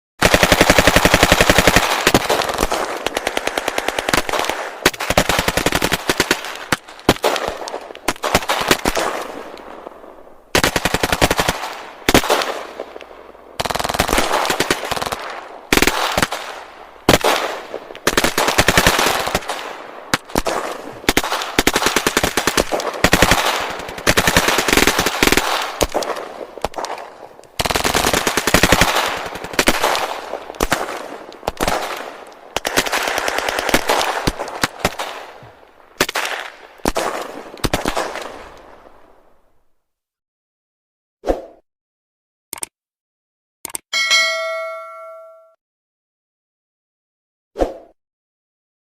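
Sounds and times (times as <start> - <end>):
automatic gunfire bursts: 0.2 - 9.0.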